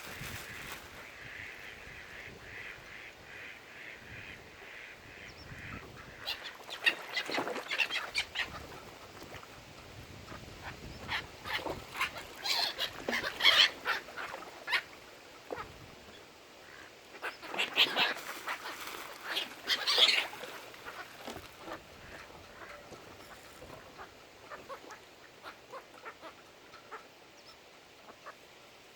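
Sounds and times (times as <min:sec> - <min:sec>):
ducks quacking: 0:00.0 - 0:08.9, 0:16.7 - 0:27.1.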